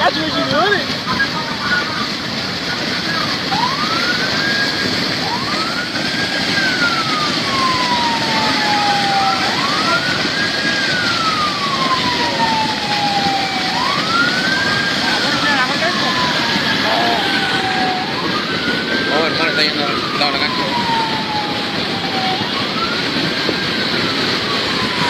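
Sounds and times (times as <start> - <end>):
floodwater rushing: 0.0 - 25.0
wailing siren: 0.0 - 25.0.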